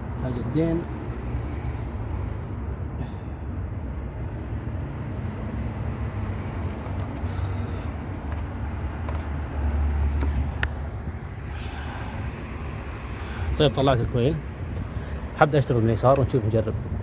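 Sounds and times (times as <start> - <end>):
steady low rumble: 1.0 - 15.7.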